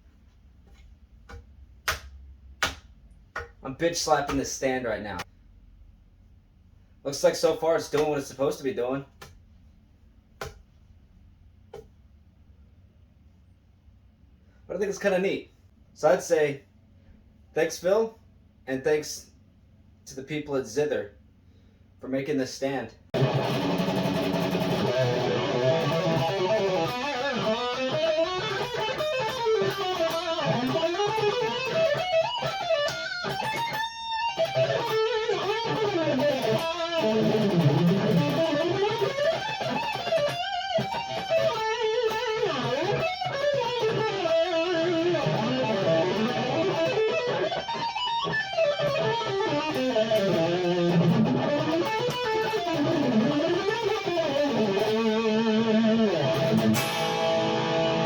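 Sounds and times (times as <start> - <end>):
electric guitar fast runs: 23.2 - 30.7.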